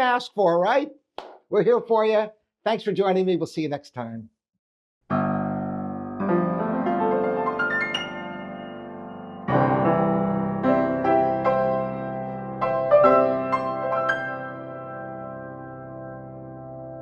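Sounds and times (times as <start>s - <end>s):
piano chords and runs: 5.1s - 17.0s.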